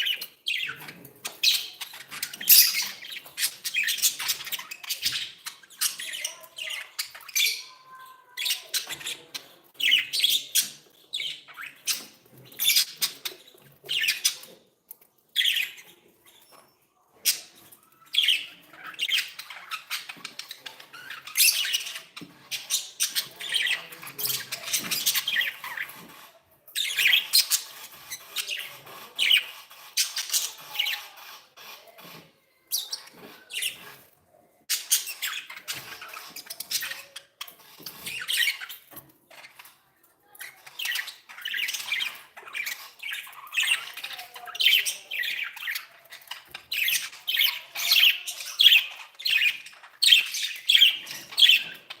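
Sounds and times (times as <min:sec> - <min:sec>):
budgerigars chattering and chirping: 0:00.0 - 0:14.6, 0:17.2 - 0:34.1, 0:34.7 - 0:52.0.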